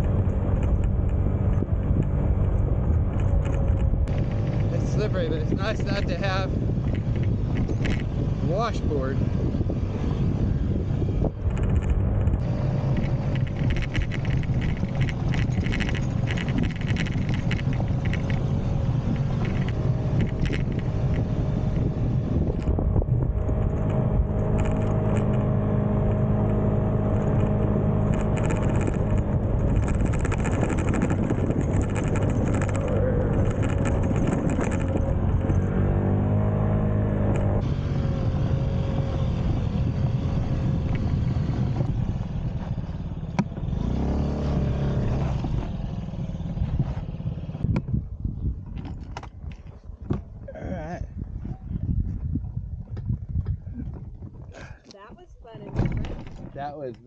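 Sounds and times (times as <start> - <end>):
motorbike engine running: 0.0 - 36.5
tyre noise on dirt road: 0.0 - 57.0
wind: 0.0 - 57.0.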